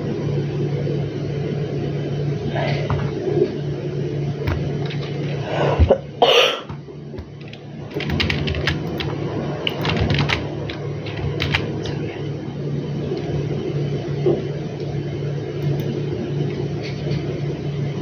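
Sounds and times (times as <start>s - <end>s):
low steady hum: 0.0s - 18.0s
person coughing: 5.8s - 6.8s.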